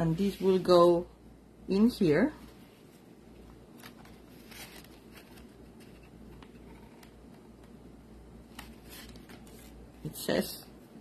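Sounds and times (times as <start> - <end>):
low steady hum: 0.0 - 11.0
paper card rustling: 2.9 - 7.8, 8.4 - 10.1.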